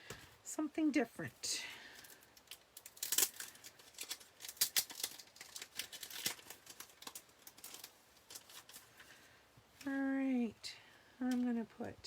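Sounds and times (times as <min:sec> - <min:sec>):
packaging crinkling: 0:01.9 - 0:09.2.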